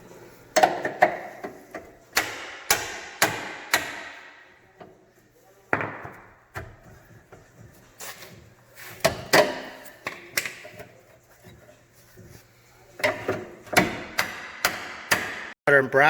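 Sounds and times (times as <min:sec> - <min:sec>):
hammer striking chisel on steel: 0:02.1 - 0:04.4.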